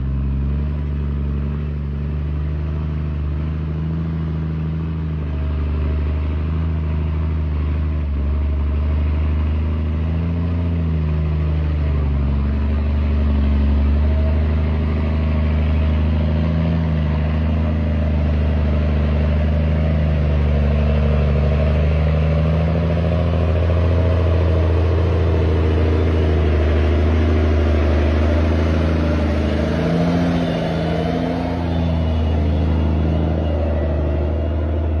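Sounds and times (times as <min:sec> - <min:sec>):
diesel truck engine drone: 0:00.0 - 0:35.0.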